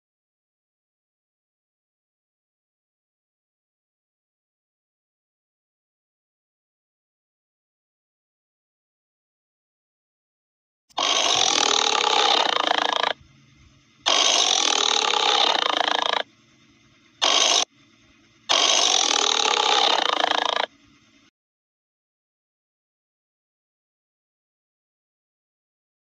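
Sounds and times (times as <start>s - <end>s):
animal's loud harsh calls: 10.9s - 13.2s, 14.0s - 16.3s, 17.2s - 17.7s, 18.5s - 20.8s.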